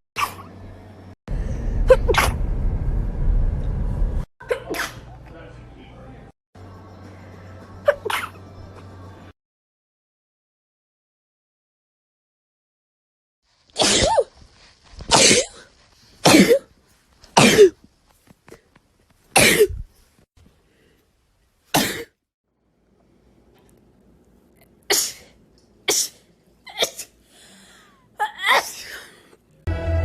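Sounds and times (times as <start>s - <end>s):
person sneezing: 4.4s - 5.0s, 13.8s - 14.3s, 15.1s - 16.7s, 17.4s - 17.8s, 19.4s - 19.8s, 24.9s - 27.2s, 28.2s - 29.3s.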